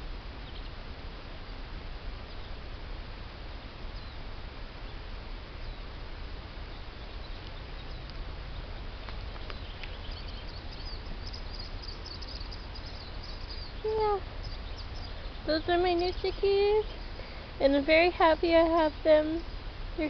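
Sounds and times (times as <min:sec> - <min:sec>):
steady low rumble: 0:00.0 - 0:20.0
chicks peeping: 0:06.7 - 0:17.7.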